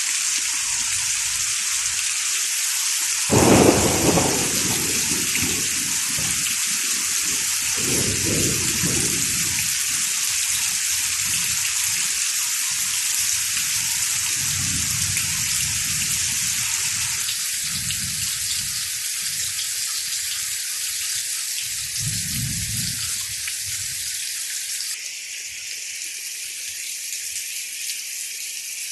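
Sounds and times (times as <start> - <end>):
heavy rain pouring: 0.0 - 24.2
thunder rumbling: 3.3 - 18.8, 21.8 - 23.2.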